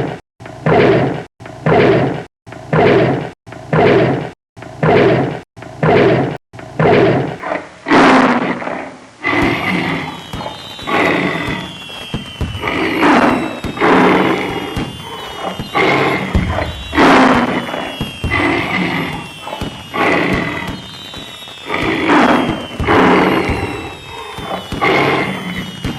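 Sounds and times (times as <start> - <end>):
tiger roars and growls: 0.6 - 10.1, 15.0 - 17.5
high tone falling in pitch: 9.8 - 25.9
thuds: 14.8 - 18.6, 19.5 - 20.8.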